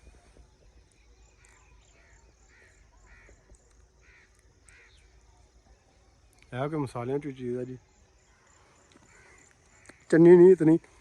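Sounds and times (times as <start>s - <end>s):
crows cawing: 2.0s - 5.1s, 8.3s - 10.3s.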